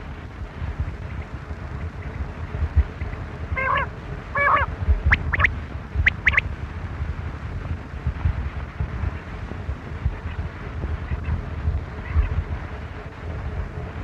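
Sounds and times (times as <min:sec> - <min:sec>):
wind rumbling on microphone: 0:00.0 - 0:14.0
quail calling: 0:03.6 - 0:05.5, 0:06.1 - 0:06.4.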